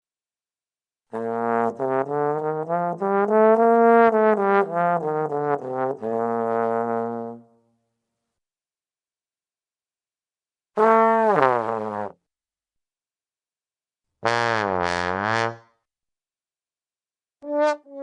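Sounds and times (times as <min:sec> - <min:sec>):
trombone playing: 0:01.1 - 0:07.4, 0:10.8 - 0:12.1, 0:14.2 - 0:15.7, 0:17.4 - 0:18.0.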